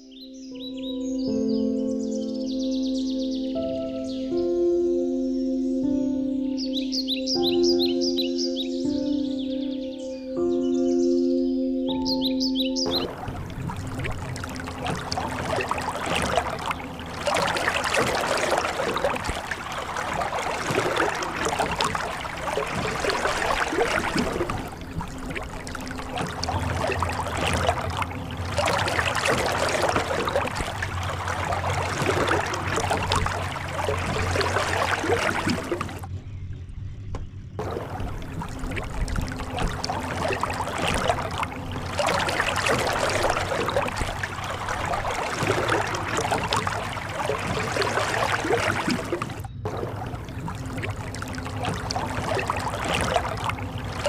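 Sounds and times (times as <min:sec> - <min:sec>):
water splashing and gurgling: 0:11.9 - 0:36.1, 0:37.6 - 0:54.0.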